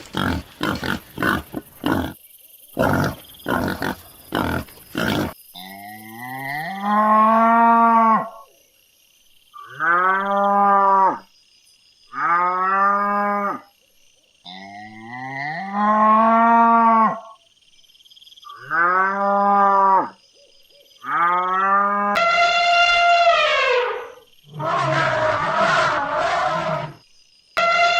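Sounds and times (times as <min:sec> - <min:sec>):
cow mooing: 0:24.5 - 0:27.0.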